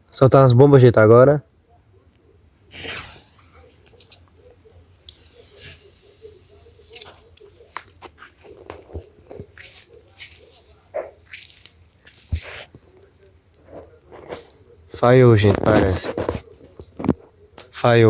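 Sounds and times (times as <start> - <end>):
crickets chirring: 0.0 - 18.0
sharp crack: 2.7 - 8.2.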